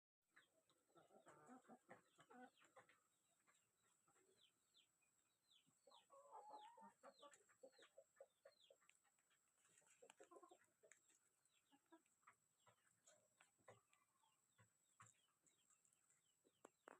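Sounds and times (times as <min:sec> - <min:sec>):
faint chickens clucking: 0:00.3 - 0:16.9.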